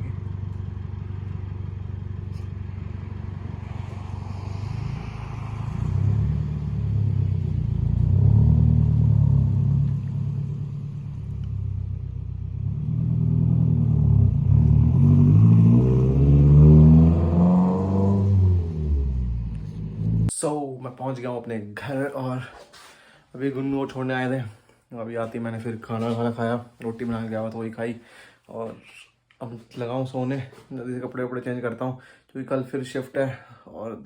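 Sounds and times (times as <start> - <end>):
car engine accelerating hard: 0.0 - 20.3.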